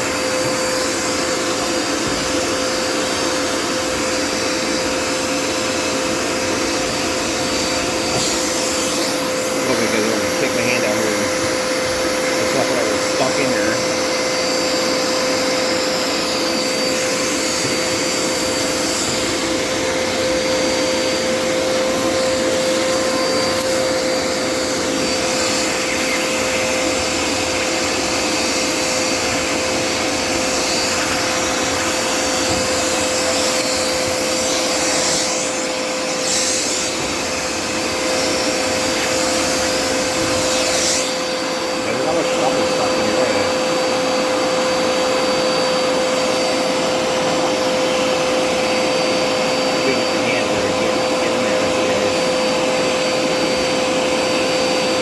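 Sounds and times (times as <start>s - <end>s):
vacuum cleaner running: 0.0s - 55.0s.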